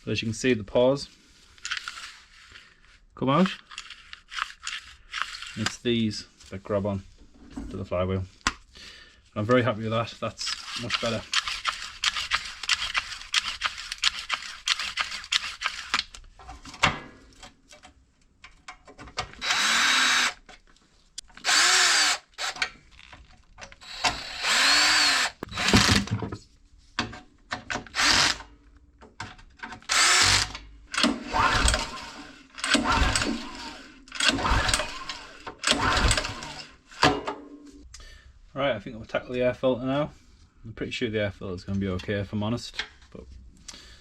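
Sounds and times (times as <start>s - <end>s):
cordless drill running: 19.4s - 20.4s, 21.4s - 22.6s, 23.8s - 26.1s, 27.9s - 28.5s, 29.9s - 37.0s.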